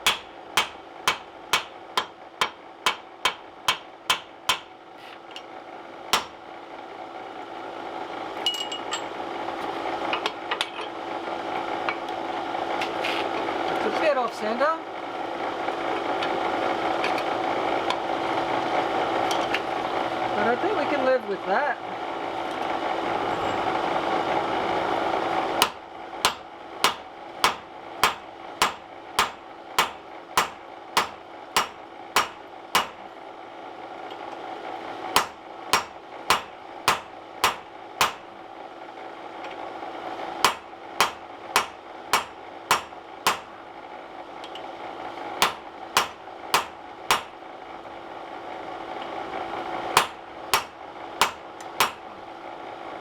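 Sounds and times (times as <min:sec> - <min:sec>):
hammer striking steel on anvil: 0:00.0 - 0:04.7, 0:06.1 - 0:06.4, 0:25.6 - 0:33.0, 0:35.1 - 0:38.3, 0:40.4 - 0:43.5, 0:45.4 - 0:47.4, 0:50.0 - 0:52.0.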